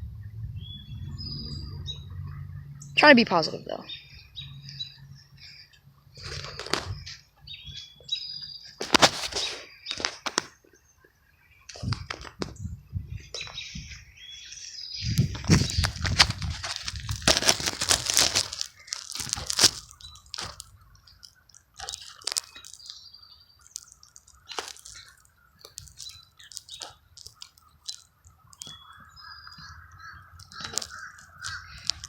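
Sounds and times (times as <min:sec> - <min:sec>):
bird chirps: 0:00.2 - 0:11.9, 0:17.4 - 0:32.0
crunching and crackling: 0:05.4 - 0:07.3, 0:08.6 - 0:10.8, 0:14.5 - 0:32.0.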